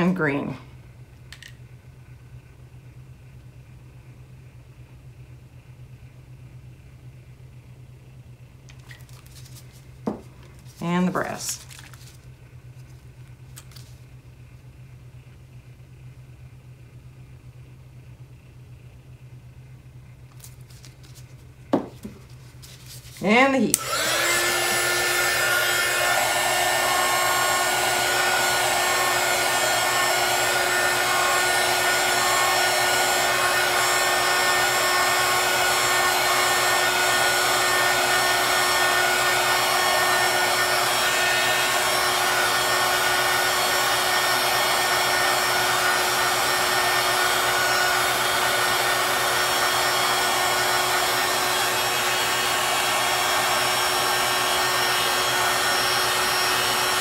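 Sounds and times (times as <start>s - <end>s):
heat gun blowing air: 23.2s - 57.0s.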